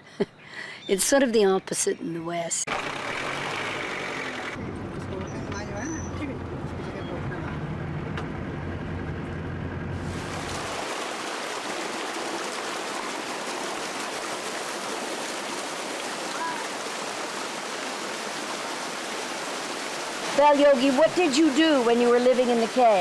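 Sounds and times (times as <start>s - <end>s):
low rumble: 4.6s - 10.5s
waterfall rushing: 10.1s - 23.0s.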